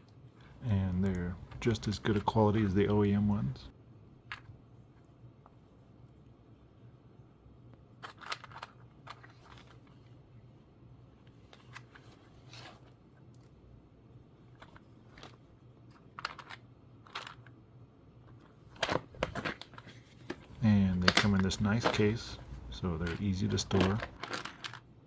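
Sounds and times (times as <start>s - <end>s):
low steady hum: 0.0s - 25.0s
small plastic parts clicking: 8.0s - 9.9s, 14.6s - 17.6s, 23.0s - 24.9s.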